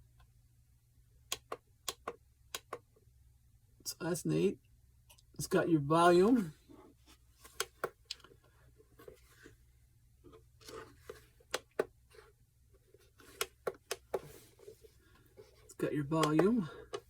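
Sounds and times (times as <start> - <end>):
alarm clock button clicks: 16.2 - 16.5.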